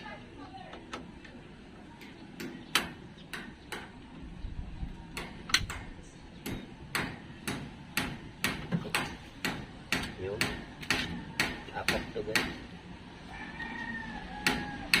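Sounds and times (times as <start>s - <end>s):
tool tapping on metal: 5.2s - 12.7s.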